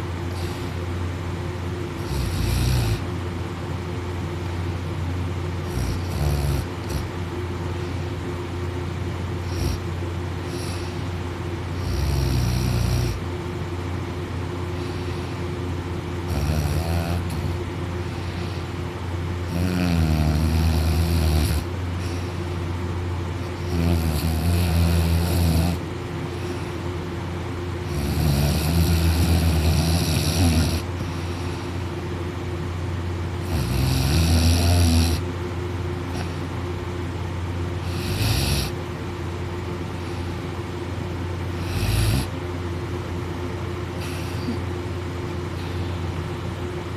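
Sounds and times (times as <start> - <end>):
steady low hum: 0.0 - 46.9
person snoring: 2.0 - 3.1, 5.6 - 7.1, 9.4 - 9.9, 11.8 - 13.2, 16.2 - 18.8, 19.5 - 22.3, 23.5 - 25.8, 27.8 - 31.8, 33.4 - 35.2, 37.8 - 38.8, 41.5 - 42.3.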